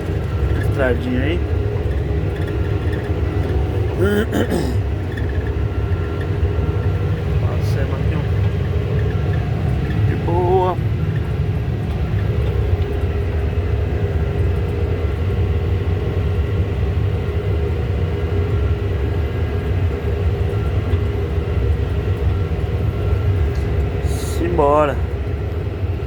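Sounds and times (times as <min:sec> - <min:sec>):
tractor diesel engine drone: 0:00.0 - 0:26.0.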